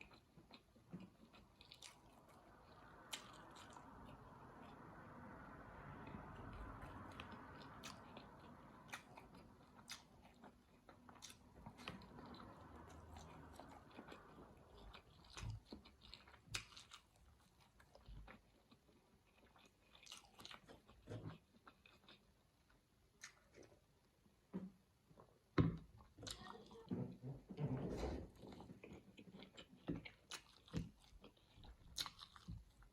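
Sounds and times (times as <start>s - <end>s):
faint chewing clicks: 6.4s - 23.8s.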